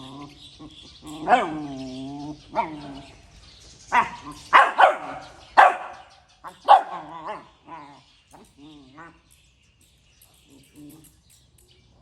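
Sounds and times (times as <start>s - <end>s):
puppy barking: 1.2s - 1.7s, 3.9s - 7.5s.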